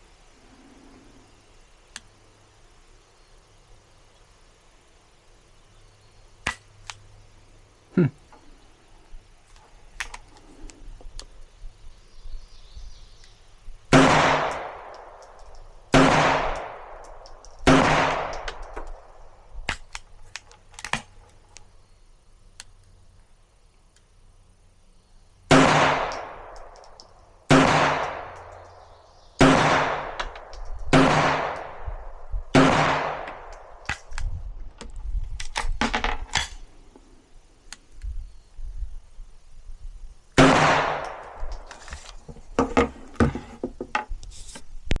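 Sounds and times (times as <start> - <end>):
pistol shots with echo: 13.9 - 15.3, 15.9 - 20.0, 25.5 - 26.8, 27.5 - 28.6, 29.4 - 34.1, 40.4 - 41.5
metallic handling clicks: 14.5 - 15.8, 16.5 - 21.7, 26.1 - 27.4, 28.0 - 28.8, 30.2 - 31.7, 33.3 - 36.7.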